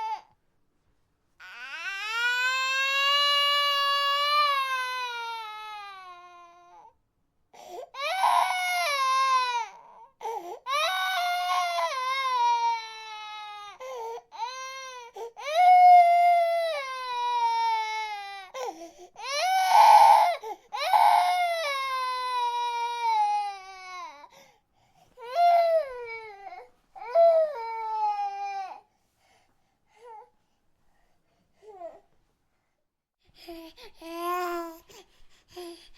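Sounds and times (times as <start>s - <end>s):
baby crying: 1.4s - 6.9s, 7.9s - 24.3s
baby gasping for breath: 33.3s - 35.9s.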